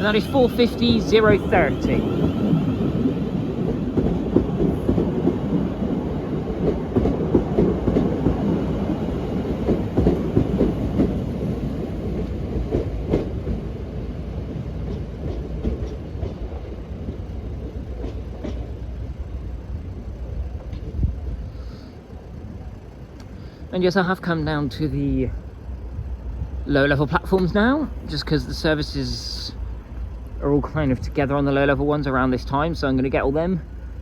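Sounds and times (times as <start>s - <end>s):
electric train running: 0.0s - 34.0s
wheels clicking over rail joints: 0.0s - 34.0s.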